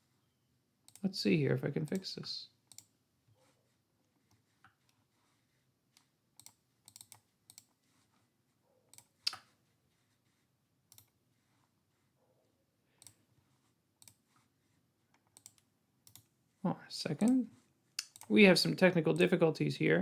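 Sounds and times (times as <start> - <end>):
mouse and keyboard clicks: 6.4 - 7.8, 8.9 - 9.5, 14.0 - 14.2, 15.2 - 16.3, 18.0 - 18.3.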